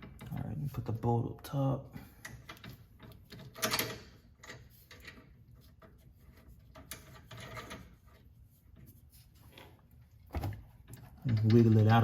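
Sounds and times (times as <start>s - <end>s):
bolt scraping metal: 2.2s - 8.9s.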